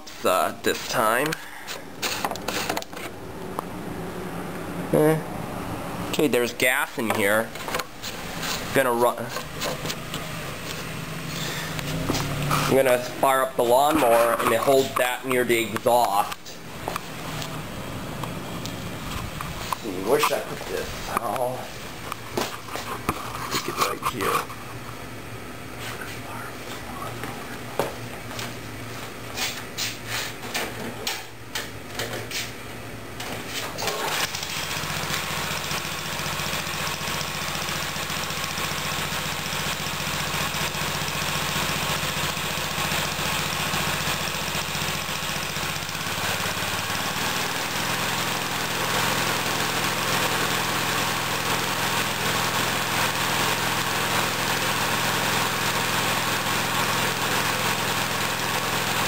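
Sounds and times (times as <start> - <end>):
lawn mower engine running: 3.9 - 23.5, 33.8 - 59.0.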